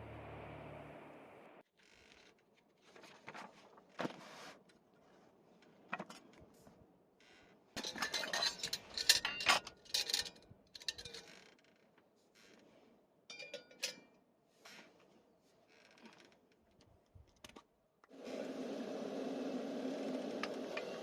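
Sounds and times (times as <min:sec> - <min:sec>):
light clinks: 0:13.3 - 0:14.1.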